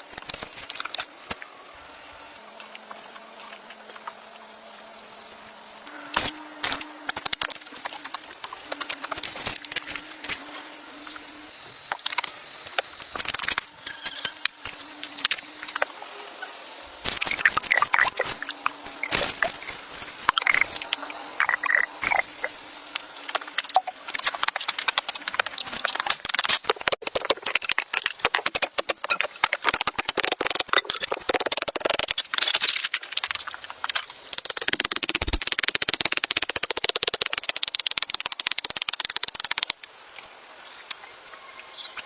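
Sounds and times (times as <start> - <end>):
high insect drone: 0.0 - 42.0
sharp clicks crunches and knocks: 17.0 - 40.3.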